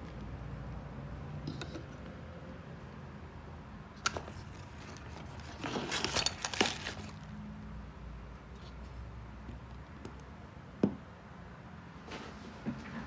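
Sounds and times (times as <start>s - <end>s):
rustling and clinking objects: 4.0s - 7.3s.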